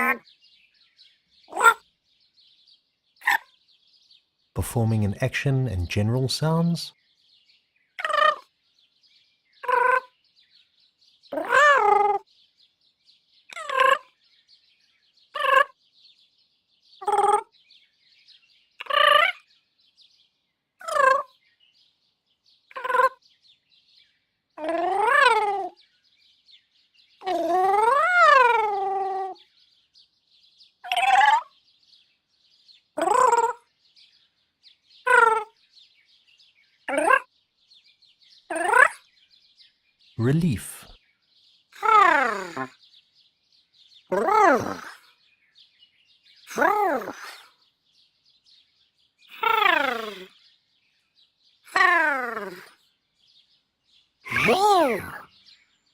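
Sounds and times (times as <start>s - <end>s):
robot voice blips: 4.6s - 6.9s, 40.2s - 40.9s, 54.3s - 55.2s.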